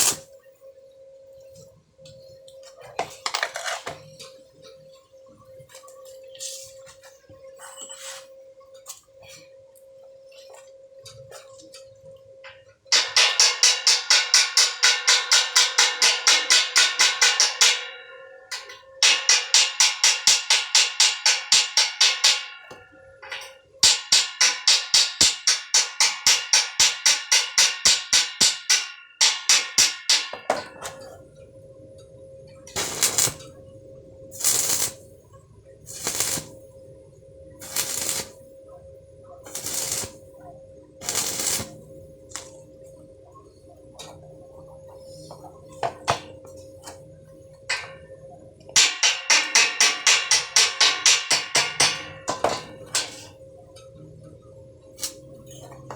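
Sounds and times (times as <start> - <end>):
hammering on steel: 12.9 - 31.0, 48.8 - 53.4.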